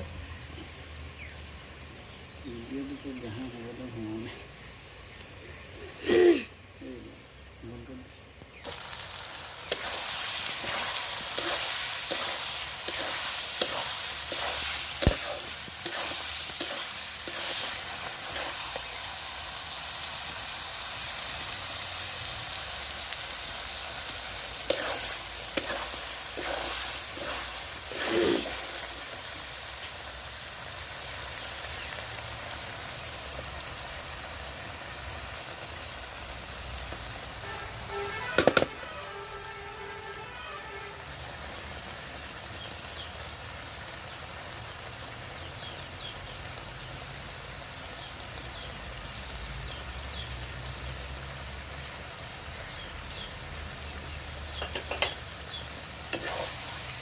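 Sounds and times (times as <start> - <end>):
food sizzling in a pan: 8.5 - 57.0
spoon stirring and scraping pan: 9.6 - 19.1, 24.6 - 29.0, 54.6 - 55.3, 56.0 - 57.0.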